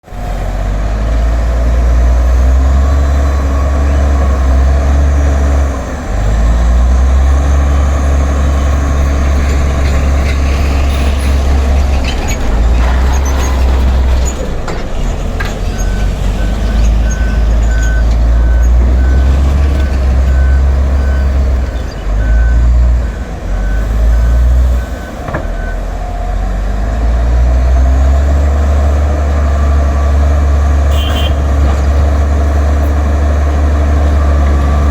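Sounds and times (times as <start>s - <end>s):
bulldozer diesel engine revving: 0.0s - 34.9s
reversing alarm beeping: 15.7s - 21.6s.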